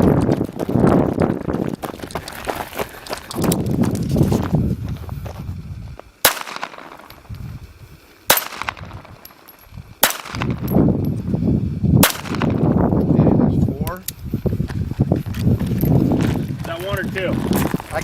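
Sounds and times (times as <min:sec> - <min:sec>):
rustling movement: 0:00.0 - 0:11.4, 0:14.2 - 0:18.0
gunshots: 0:06.2 - 0:07.1, 0:08.3 - 0:09.2, 0:10.0 - 0:10.7, 0:12.0 - 0:12.7.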